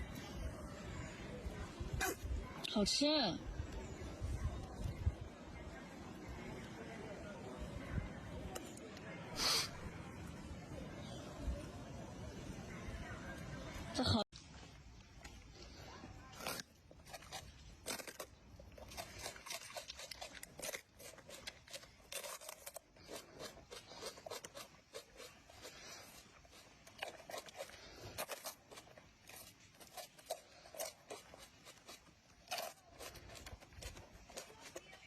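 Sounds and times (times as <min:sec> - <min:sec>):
food crunching: 0:15.1 - 0:35.0.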